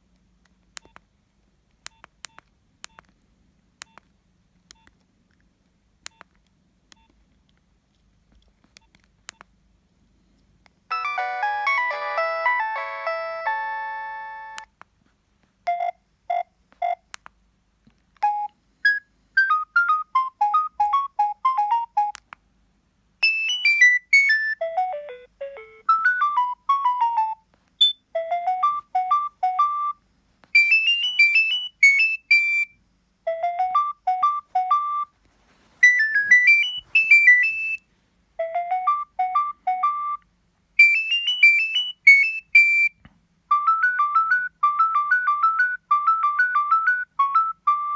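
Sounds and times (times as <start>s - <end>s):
electronic ringtone melody: 10.9s - 14.7s, 23.2s - 30.0s, 30.6s - 32.7s, 33.3s - 35.1s, 35.8s - 37.8s, 38.4s - 40.2s, 40.8s - 42.9s.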